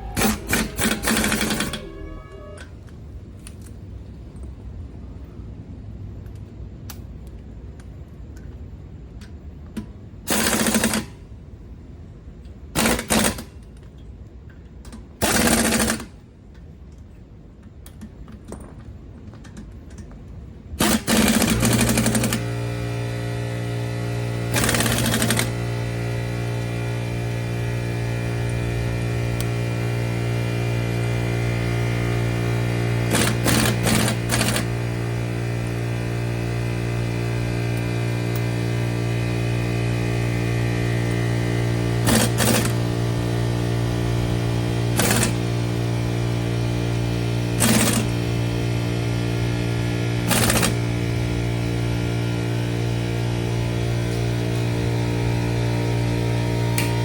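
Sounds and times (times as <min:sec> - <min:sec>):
impact wrench rattling bursts: 0:00.0 - 0:02.1, 0:20.8 - 0:55.2
steady machine hum: 0:00.0 - 0:03.3, 0:20.9 - 0:57.0.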